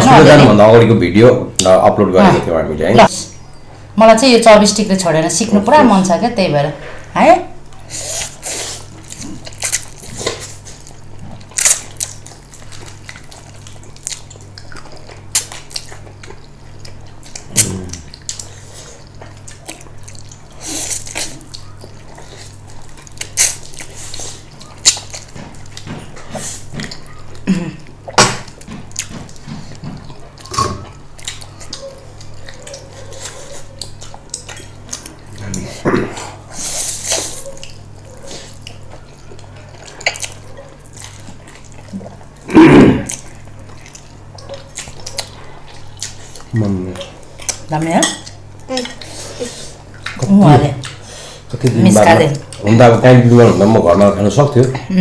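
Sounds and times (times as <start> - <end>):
slurping and chewing noodles: 7.8 - 47.7.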